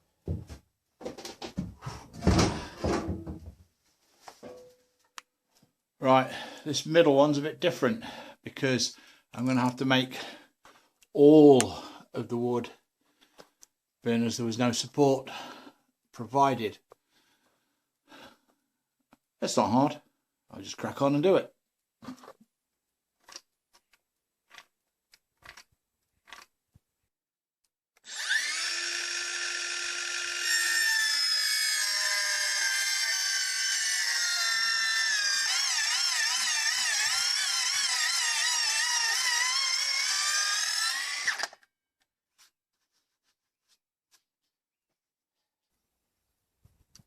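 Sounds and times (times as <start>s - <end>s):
power tool motor whine: 28.0s - 41.6s.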